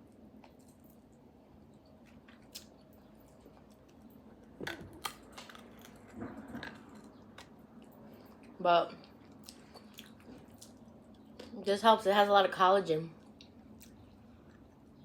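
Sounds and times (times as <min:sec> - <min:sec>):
soft chewing: 0:00.0 - 0:11.6, 0:13.2 - 0:15.0
sharp clicks and crunches: 0:02.1 - 0:07.6.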